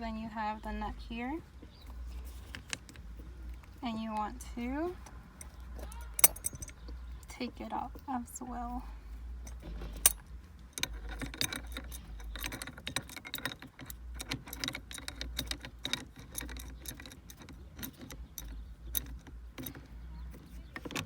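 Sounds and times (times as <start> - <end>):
wrench clicking on metal nut: 5.0 - 6.8, 9.5 - 19.9.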